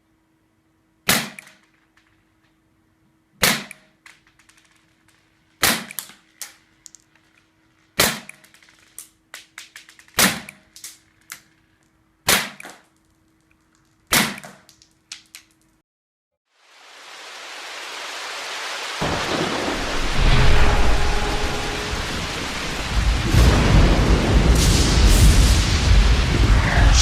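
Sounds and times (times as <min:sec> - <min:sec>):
airsoft pistol shots: 0:01.1 - 0:01.6, 0:03.4 - 0:04.0, 0:05.6 - 0:06.1, 0:08.0 - 0:08.4, 0:10.2 - 0:10.6, 0:12.3 - 0:12.8, 0:14.1 - 0:14.6
rattle of small clicks: 0:03.7 - 0:12.0.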